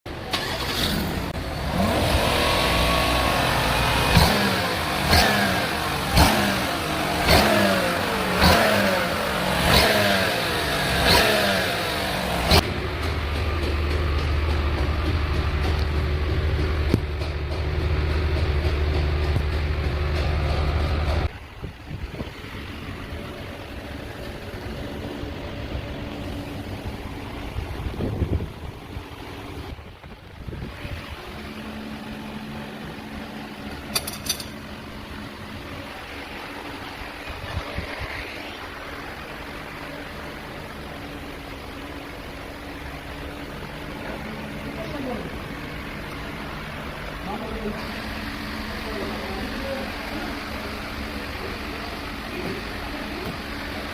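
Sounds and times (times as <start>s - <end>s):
vehicle engine running at low revs: 0.1s - 53.9s
car engine revving: 0.2s - 21.4s.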